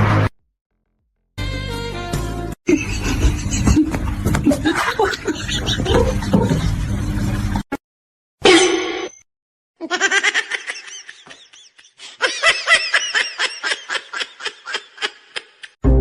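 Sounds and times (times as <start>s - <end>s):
high-pitched laughter: 2.7s - 6.6s, 9.8s - 15.8s.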